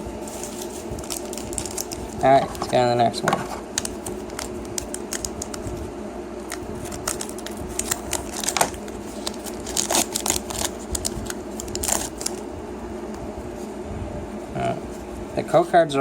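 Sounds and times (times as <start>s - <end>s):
foil wrapper crinkling: 0.2s - 5.8s, 6.4s - 12.5s
foil ripping: 0.3s - 2.8s, 3.7s - 5.7s, 6.4s - 12.4s.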